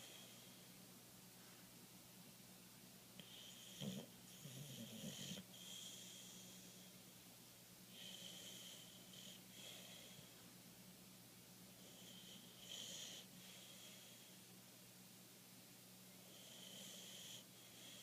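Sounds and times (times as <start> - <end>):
dog snoring: 3.2 - 6.9, 7.9 - 10.3, 11.8 - 14.4, 16.3 - 18.0.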